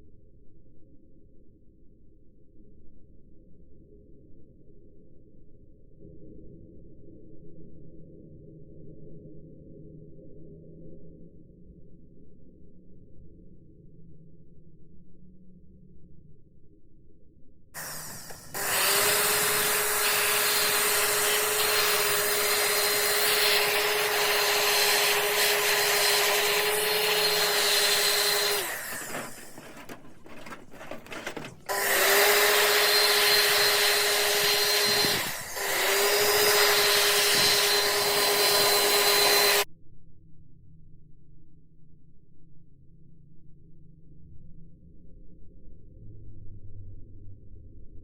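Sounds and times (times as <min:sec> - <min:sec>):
electric motor tool whining: 0:17.8 - 0:39.6.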